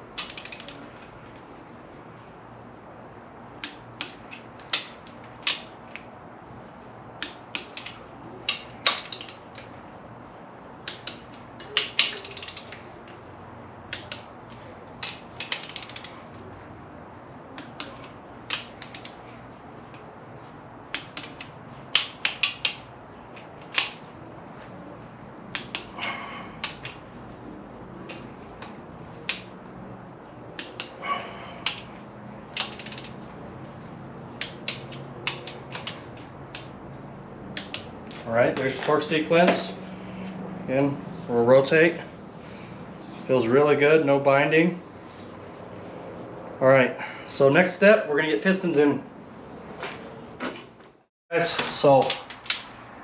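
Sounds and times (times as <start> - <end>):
torque wrench ratcheting and clicking: 0.2 - 0.8, 15.0 - 16.2, 32.5 - 33.2.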